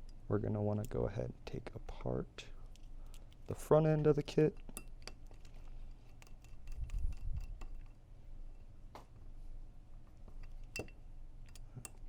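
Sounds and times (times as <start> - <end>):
small tools and parts clinking: 2.6 - 8.8, 10.2 - 12.0.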